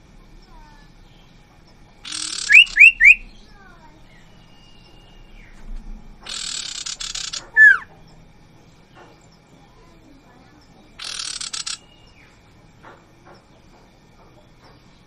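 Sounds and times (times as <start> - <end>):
bird harsh rasping call: 2.0 - 3.7, 6.2 - 7.9, 11.0 - 12.0
bird whistles: 2.1 - 3.4, 6.3 - 7.9.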